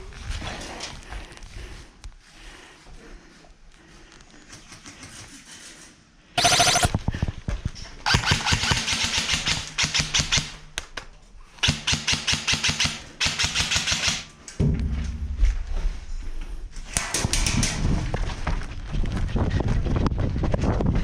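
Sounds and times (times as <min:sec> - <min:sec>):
airsoft rifles firing bursts: 0:06.4 - 0:07.0, 0:08.0 - 0:10.6, 0:11.6 - 0:14.3.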